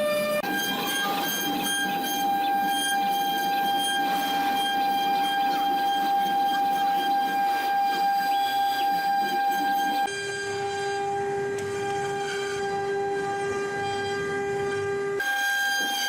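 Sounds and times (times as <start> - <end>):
router motor high-pitched whine: 0.0 - 16.0
wood cutting noise: 0.0 - 16.0.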